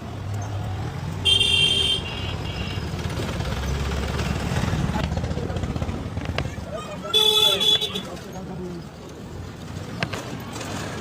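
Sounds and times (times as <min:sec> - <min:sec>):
street traffic rumbling: 0:00.0 - 0:11.0
vehicle horn honking: 0:01.2 - 0:02.8, 0:07.1 - 0:08.1.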